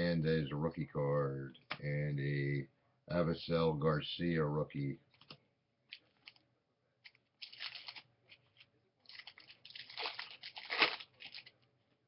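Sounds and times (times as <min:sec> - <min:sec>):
cards rustling: 0:07.0 - 0:11.6.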